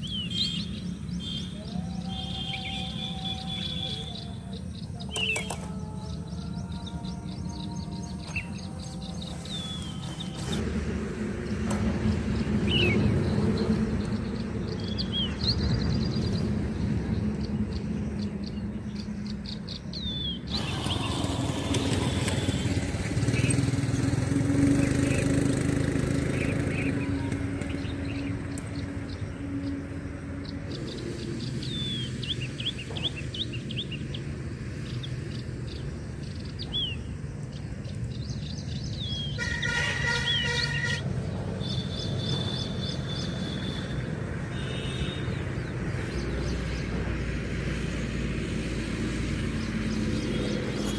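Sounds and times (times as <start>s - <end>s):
birds chirping: 0.0s - 50.9s
outdoor background noise: 0.0s - 50.9s.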